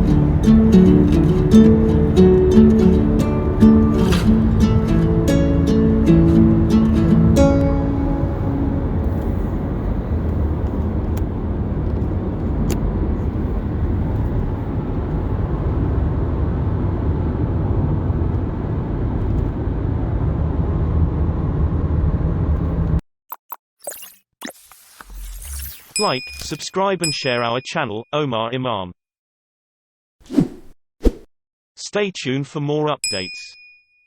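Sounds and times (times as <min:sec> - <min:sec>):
steady low rumbling: 0:00.0 - 0:22.2.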